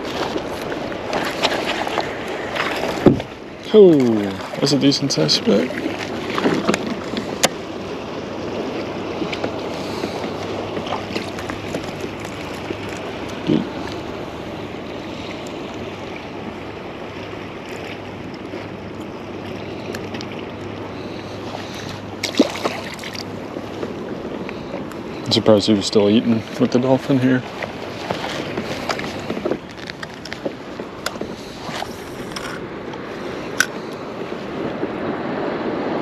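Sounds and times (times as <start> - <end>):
water lapping around kayak: 0.0 - 36.0
wind noise on microphone: 2.7 - 3.4.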